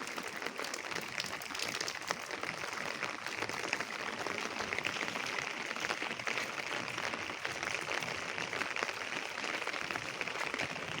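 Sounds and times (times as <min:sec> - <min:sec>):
light rain pattering: 0:00.0 - 0:11.0.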